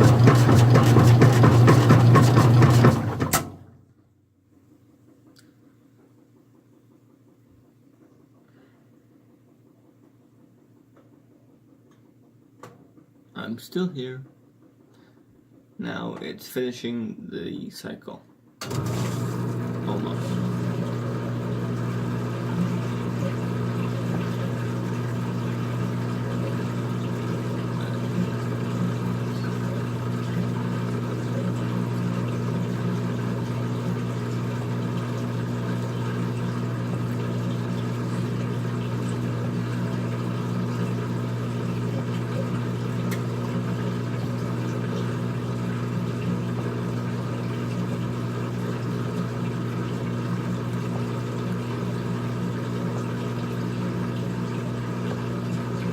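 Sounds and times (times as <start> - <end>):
washing machine motor hum: 0.0 - 5.3, 18.6 - 55.9.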